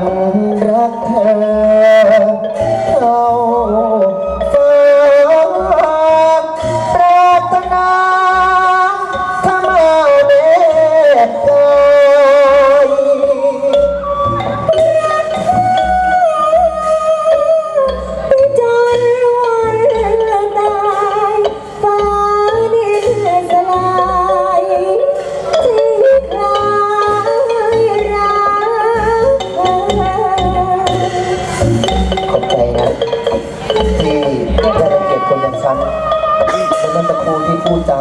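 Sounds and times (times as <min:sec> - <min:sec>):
wavering sliding melody: 0:00.0 - 0:38.0
low drum beat: 0:29.0 - 0:38.0.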